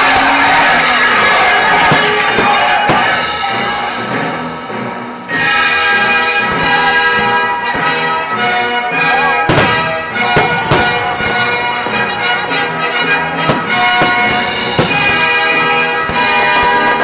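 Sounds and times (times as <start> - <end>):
firework bangs: 0.0 - 4.2, 5.4 - 17.0
loud music: 0.0 - 17.0.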